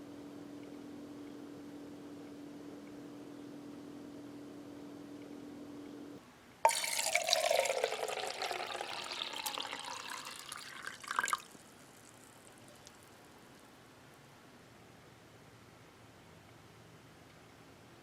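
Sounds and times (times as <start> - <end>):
faint steady hum: 0.0 - 18.0
water pouring into container: 6.7 - 13.1.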